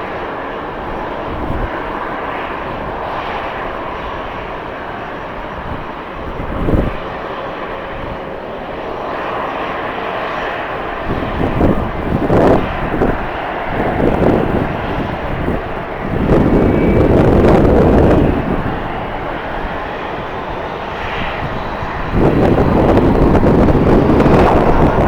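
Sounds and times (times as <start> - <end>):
airliner engines droning: 0.0 - 25.0
wind buffeting microphone: 0.0 - 25.0.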